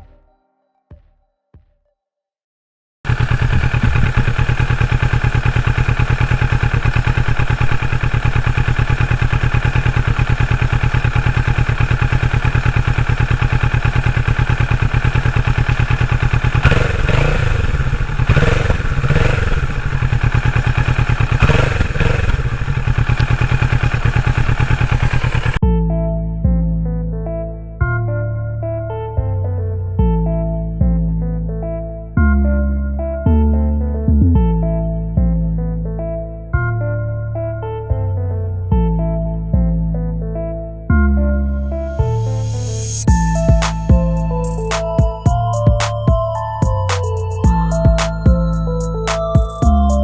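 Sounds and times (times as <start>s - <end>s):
motorcycle engine idling and revving: 3.1s - 25.6s, 42.1s - 50.0s.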